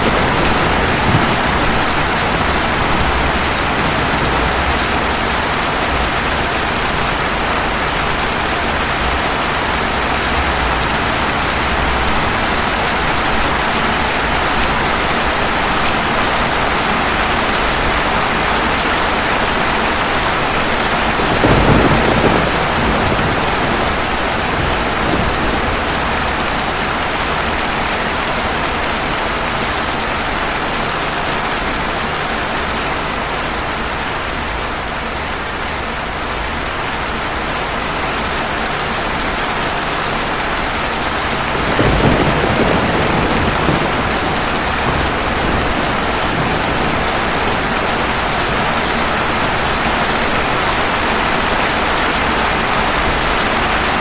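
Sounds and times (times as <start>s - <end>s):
thunder clap: 0.0s - 16.5s, 17.3s - 29.5s, 41.1s - 53.8s
heavy rain on hard surface: 0.0s - 54.0s.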